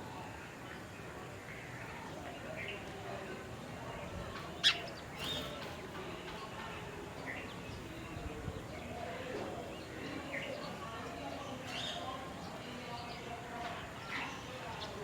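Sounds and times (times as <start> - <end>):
birds chirping: 4.2 - 15.0.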